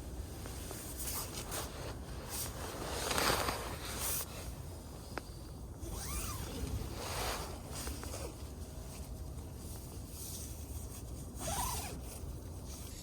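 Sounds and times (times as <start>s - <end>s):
zipper being pulled: 5.8s - 8.3s, 11.4s - 12.1s.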